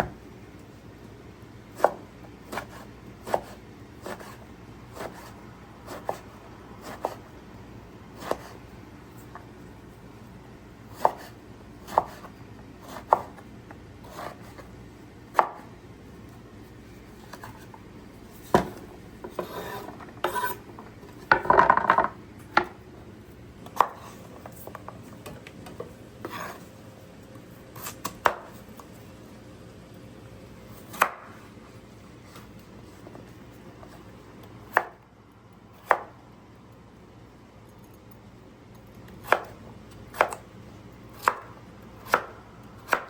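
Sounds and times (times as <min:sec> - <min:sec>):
knife chopping on cutting board: 0:01.7 - 0:07.3, 0:08.1 - 0:08.6, 0:10.9 - 0:14.7, 0:15.3 - 0:15.7, 0:18.4 - 0:22.8, 0:23.6 - 0:25.0, 0:25.8 - 0:26.6, 0:27.8 - 0:28.6, 0:30.8 - 0:31.4, 0:33.8 - 0:35.0, 0:35.8 - 0:36.2, 0:39.2 - 0:40.5, 0:41.1 - 0:43.0.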